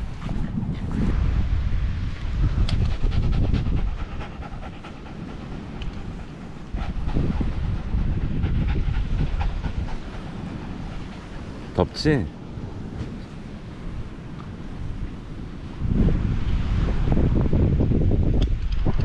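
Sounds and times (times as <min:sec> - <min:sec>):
wind rumbling on microphone: 0:00.0 - 0:19.0
small dog panting: 0:02.7 - 0:12.0.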